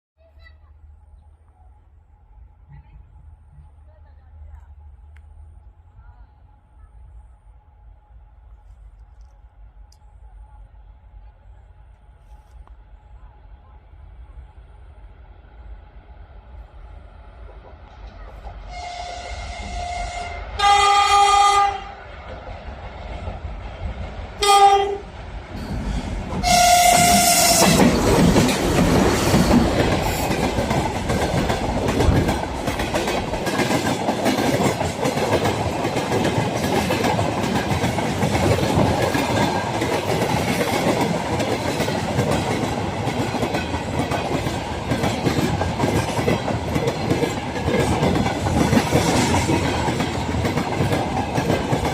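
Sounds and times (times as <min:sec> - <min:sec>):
train rumble: 0:00.2 - 0:51.9
locomotive horn blasts: 0:18.7 - 0:21.9, 0:24.4 - 0:25.1, 0:26.4 - 0:27.8
train wheels clattering over rail joints: 0:25.7 - 0:51.9.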